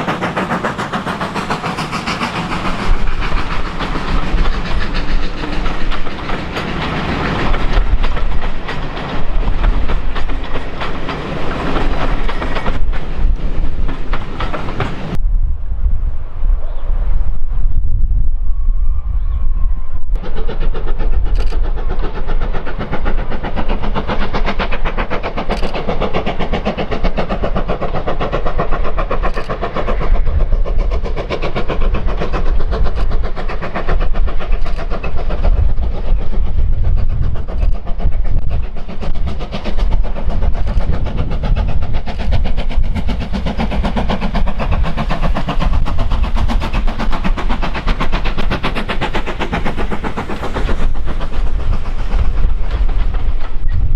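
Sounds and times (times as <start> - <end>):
steam locomotive running: 0.0 - 53.9
sharp clicks: 25.4 - 26.2.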